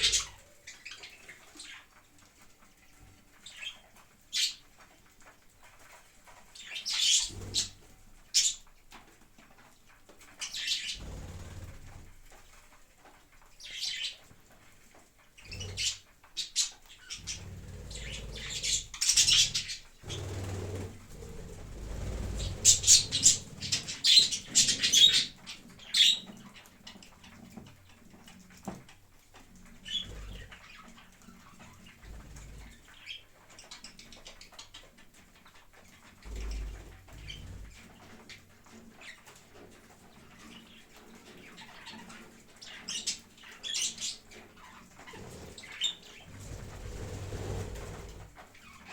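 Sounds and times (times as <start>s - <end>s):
parrot chirping and squawking: 0.0s - 1.8s, 15.5s - 20.4s, 22.4s - 26.2s
parrot wings flapping: 19.1s - 23.7s, 46.2s - 48.4s.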